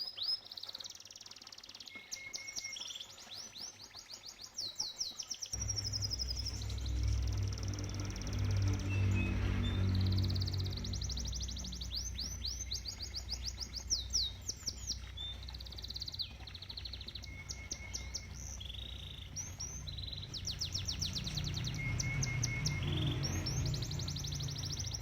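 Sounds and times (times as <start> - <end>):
canary singing trills: 1.7 - 25.0
low steady rumble: 5.6 - 25.0.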